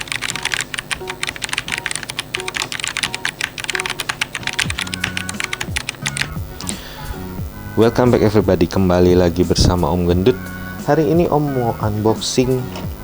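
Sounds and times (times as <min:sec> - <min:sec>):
fast typing on mechanical keyboard: 0:00.0 - 0:06.4.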